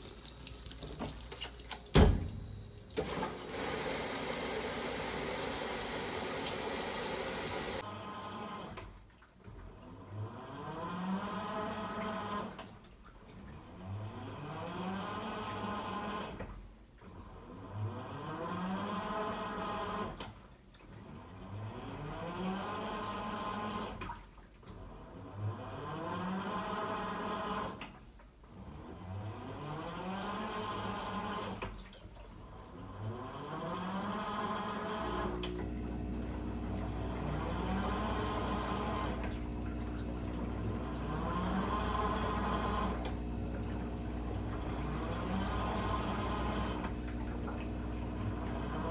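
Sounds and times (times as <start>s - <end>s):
washing machine motor whine: 0.0s - 48.9s
steady low hum: 35.2s - 48.9s.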